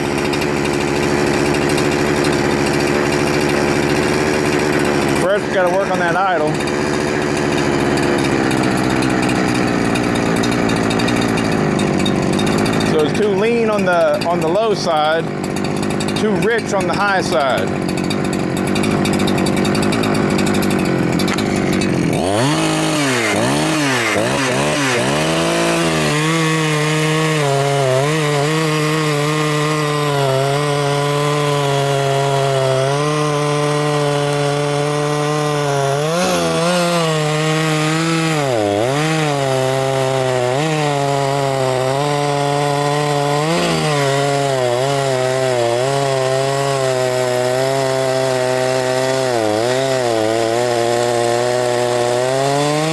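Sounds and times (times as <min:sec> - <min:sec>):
chainsaw engine revving and idling: 0:00.0 - 0:52.9.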